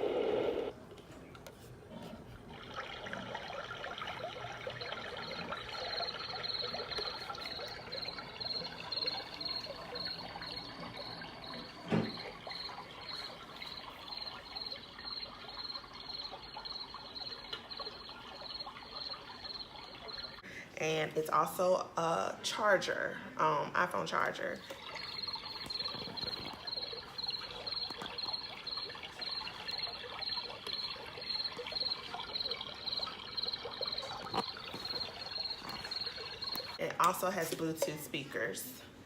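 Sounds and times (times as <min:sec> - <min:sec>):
running water from sound machine: 0:01.5 - 0:22.9, 0:23.7 - 0:38.6
high chirp: 0:25.1 - 0:36.8.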